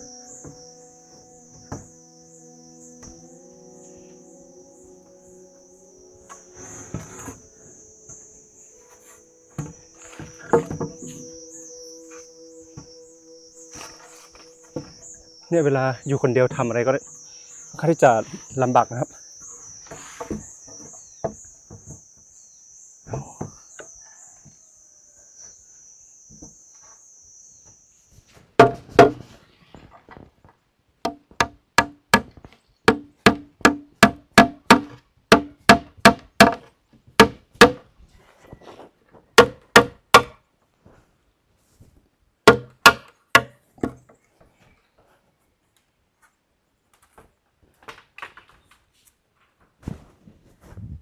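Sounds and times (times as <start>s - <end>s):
high wavering buzz: 0.0s - 20.7s
hammer striking wood: 1.6s - 1.9s, 9.6s - 11.3s, 28.6s - 29.3s, 31.1s - 37.8s, 39.4s - 40.4s, 42.5s - 44.0s.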